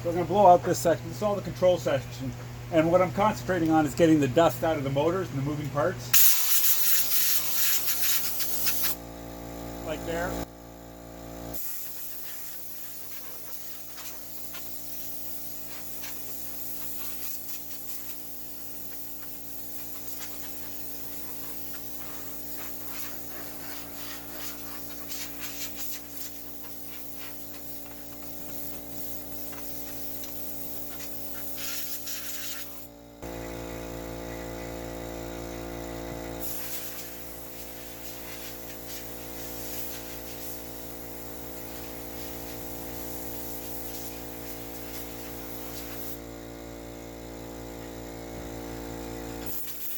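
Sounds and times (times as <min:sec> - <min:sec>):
air blowing hiss: 0:06.2 - 0:09.0, 0:11.5 - 0:32.9, 0:36.4 - 0:46.2.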